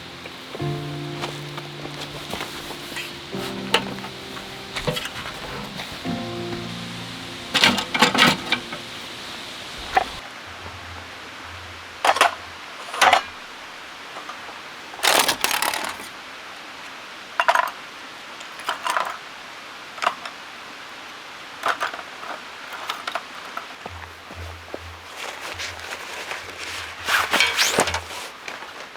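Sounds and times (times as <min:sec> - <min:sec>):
metal objects rattling: 0:15.0 - 0:16.1, 0:26.8 - 0:28.3.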